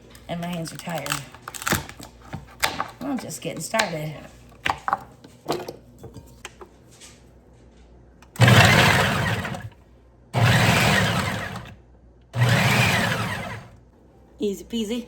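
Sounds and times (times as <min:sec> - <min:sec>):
food processor chopping vegetables: 0:08.3 - 0:09.7, 0:10.4 - 0:11.8, 0:12.4 - 0:13.8.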